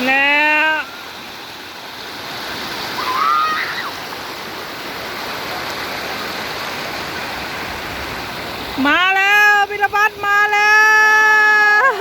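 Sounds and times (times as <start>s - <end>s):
waterfall rushing: 0.0s - 12.0s
person's high rising cry: 3.0s - 4.0s.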